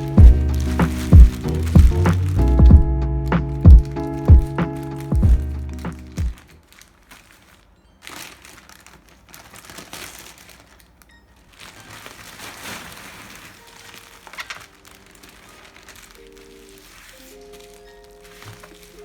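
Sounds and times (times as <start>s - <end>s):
packaging crinkling and rustling: 0.0s - 19.0s
soft background music: 0.0s - 19.0s.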